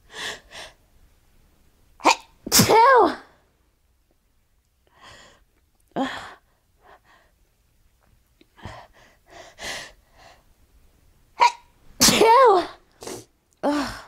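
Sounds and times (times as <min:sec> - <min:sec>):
woman breathing and sniffing: 0:08.4 - 0:10.6, 0:12.9 - 0:13.4.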